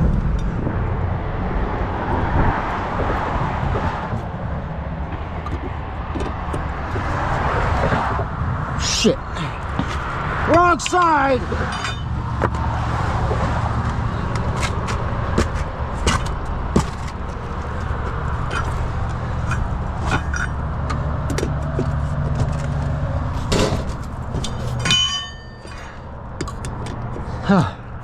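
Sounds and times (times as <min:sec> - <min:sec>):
metallic clanks and knocks: 0:05.1 - 0:07.2, 0:10.6 - 0:12.6, 0:14.4 - 0:27.2
vehicle engine running: 0:11.8 - 0:28.0.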